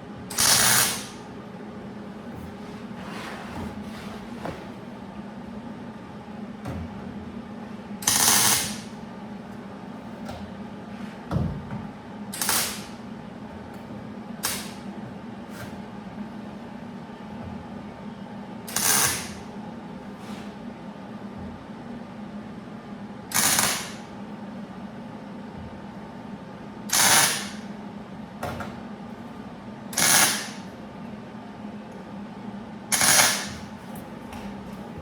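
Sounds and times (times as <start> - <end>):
steady low hum: 0.0 - 23.3, 27.5 - 35.0
welder crackling: 8.0 - 9.0, 12.3 - 13.0, 14.4 - 14.8, 33.0 - 33.5.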